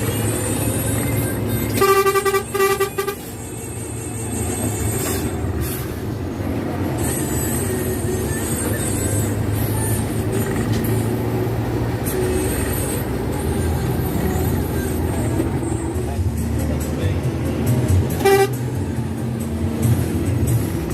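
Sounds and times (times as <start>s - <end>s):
bus engine drone: 0.0s - 20.9s
road noise: 0.0s - 20.9s
bus horn: 1.0s - 5.9s, 17.4s - 20.1s.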